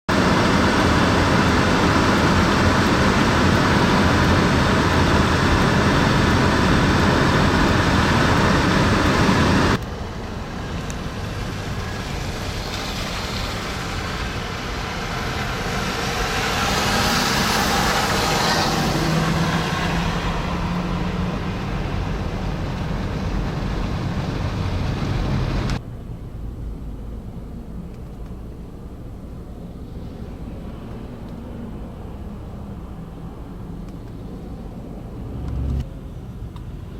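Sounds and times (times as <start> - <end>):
road traffic on snowy streets: 0.1 - 36.9
vehicle passing: 4.8 - 25.8, 29.8 - 36.1.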